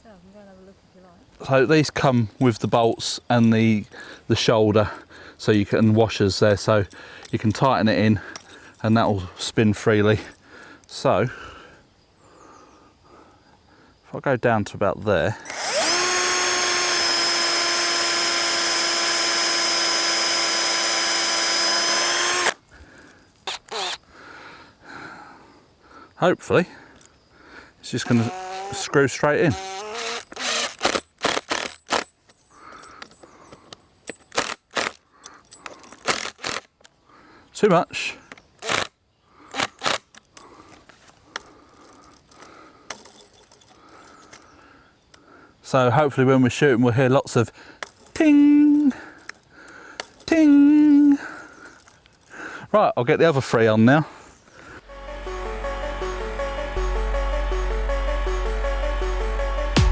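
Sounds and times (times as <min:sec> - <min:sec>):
power drill boring into wood: 0:15.4 - 0:22.6, 0:23.5 - 0:24.0, 0:28.0 - 0:32.1, 0:36.0 - 0:36.7, 0:38.6 - 0:38.9
sharp metal clicks: 0:23.4 - 0:24.0, 0:28.0 - 0:37.0
metallic clinks of steel targets: 0:30.8 - 0:36.2.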